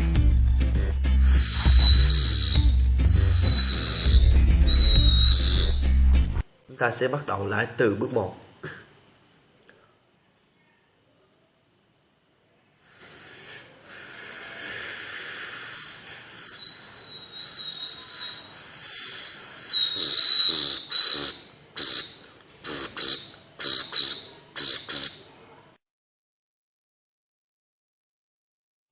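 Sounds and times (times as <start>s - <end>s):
person imitating cricket chirps: 0.8s - 6.0s, 12.7s - 25.8s.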